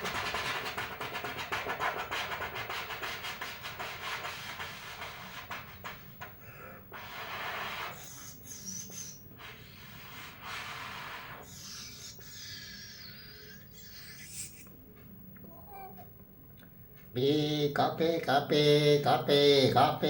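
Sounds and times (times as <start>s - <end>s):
mouth-made steam hisses: 6.4s - 14.5s
high wavering whistle-like tones: 7.9s - 9.8s.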